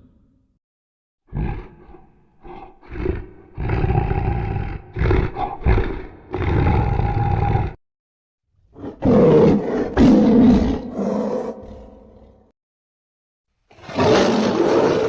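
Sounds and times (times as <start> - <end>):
giant ape roaring: 1.3 - 7.8, 8.8 - 12.5, 13.8 - 15.0.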